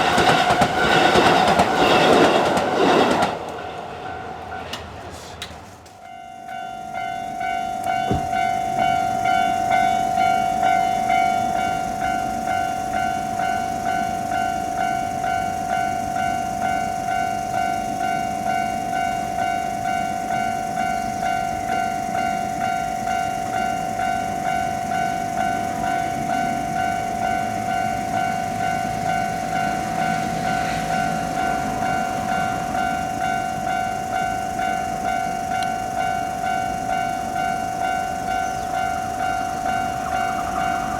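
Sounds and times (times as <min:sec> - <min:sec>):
railroad crossing bell ringing: 0:00.0 - 0:05.0, 0:05.9 - 0:40.9.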